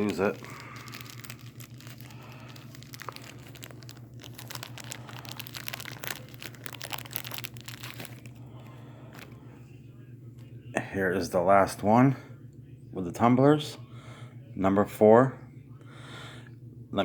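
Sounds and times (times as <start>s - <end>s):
packaging crinkling: 0.0s - 9.4s.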